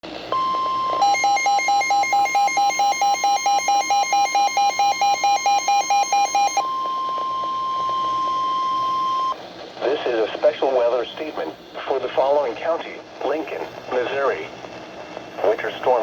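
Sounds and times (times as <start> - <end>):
steady high alarm tone: 0.3 - 9.4
buzzy pulsing beep: 0.4 - 9.4.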